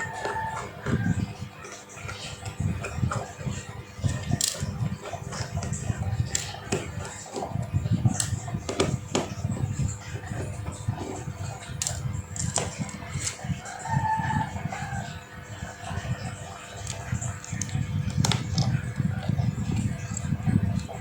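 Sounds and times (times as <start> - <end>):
small tools clicking and tapping: 4.0 - 9.4, 11.0 - 13.4.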